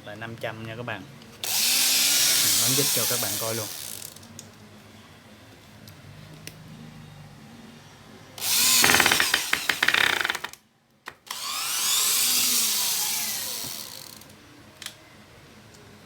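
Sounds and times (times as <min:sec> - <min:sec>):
cordless drill running: 0:08.4 - 0:10.5, 0:11.3 - 0:14.2.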